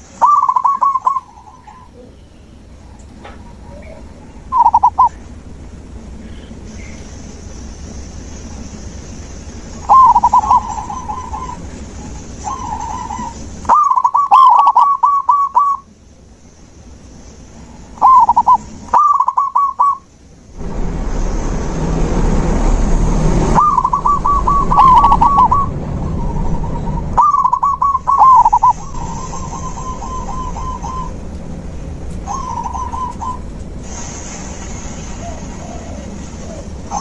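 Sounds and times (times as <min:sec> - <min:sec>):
doves cooing: 0:00.2 - 0:02.2, 0:03.3 - 0:05.2, 0:09.8 - 0:15.8, 0:17.7 - 0:20.0, 0:23.6 - 0:31.2, 0:32.2 - 0:33.5, 0:35.2 - 0:37.0
rushing noise: 0:04.4 - 0:15.0, 0:16.6 - 0:37.0.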